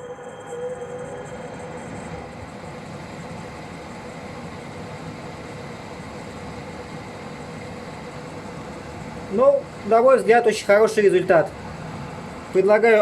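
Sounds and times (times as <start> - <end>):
faint steady tone: 0.0 - 9.8
ventilation fan air rush: 0.0 - 13.0.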